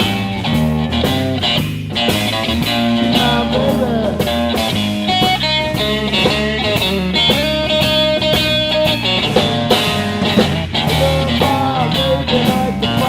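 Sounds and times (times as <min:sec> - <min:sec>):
blues-rock band playing: 0:00.0 - 0:13.0
person singing: 0:03.0 - 0:04.7, 0:10.8 - 0:13.0.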